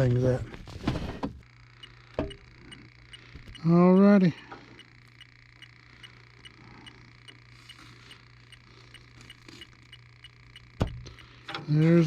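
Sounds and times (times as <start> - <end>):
low steady hum: 0.0 - 12.0
leak detector ticking: 1.4 - 12.0.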